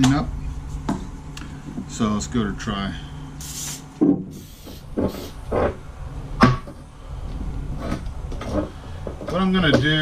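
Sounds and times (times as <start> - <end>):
aerosol can spray hissing: 3.4 - 5.4
sharp knocks: 6.4 - 6.8.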